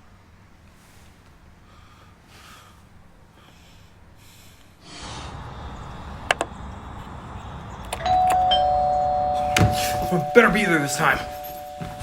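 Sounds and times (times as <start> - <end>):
two-tone doorbell chime: 8.0 - 12.0.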